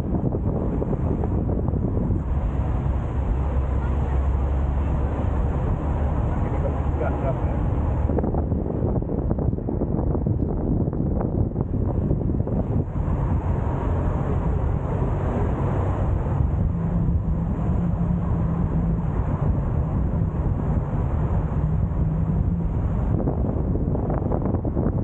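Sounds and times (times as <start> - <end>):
car wind and road noise: 0.0 - 25.0
low hum: 0.0 - 25.0.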